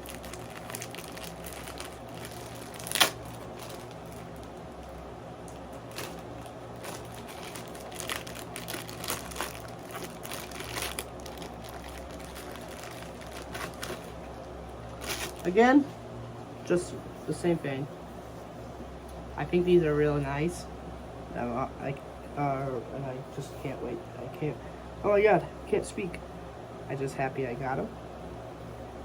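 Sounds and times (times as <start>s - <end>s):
packaging crinkling and rustling: 0.0s - 15.6s.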